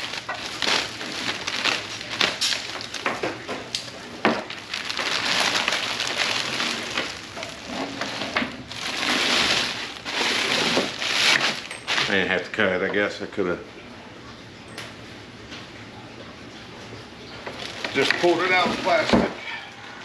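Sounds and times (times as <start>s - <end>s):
plastic packaging crinkling: 0.0s - 12.6s, 17.5s - 19.3s.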